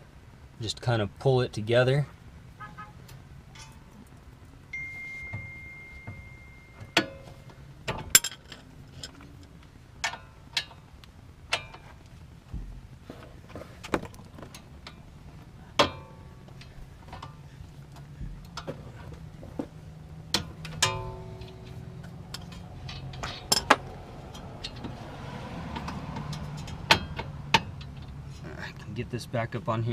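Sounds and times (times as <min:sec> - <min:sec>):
hand tools clinking on steel: 0:05.0 - 0:10.8, 0:20.3 - 0:25.0.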